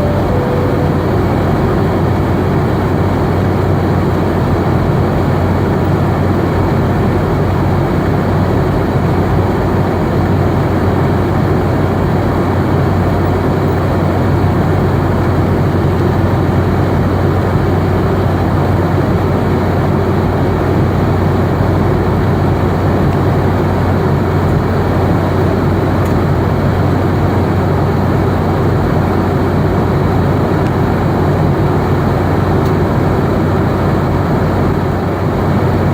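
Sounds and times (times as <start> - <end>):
jet engines droning: 0.0 - 2.6.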